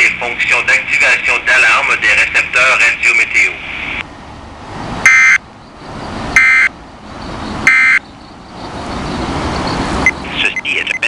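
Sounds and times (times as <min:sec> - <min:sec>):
radio hiss: 0:00.0 - 0:04.0, 0:10.2 - 0:11.0.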